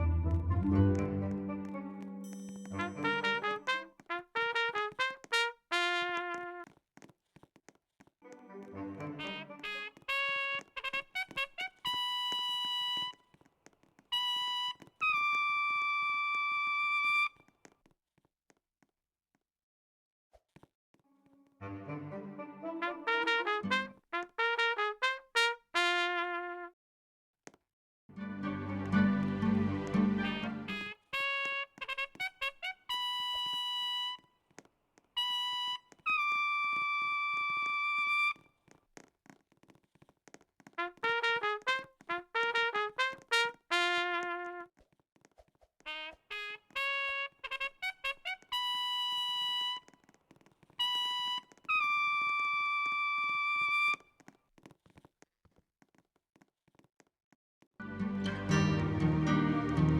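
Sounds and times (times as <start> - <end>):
trumpet playing: 0.0 - 6.7, 8.5 - 13.2, 14.1 - 17.3, 21.6 - 26.7, 28.2 - 34.2, 35.2 - 38.4, 40.8 - 44.7, 45.9 - 49.9, 50.8 - 54.0.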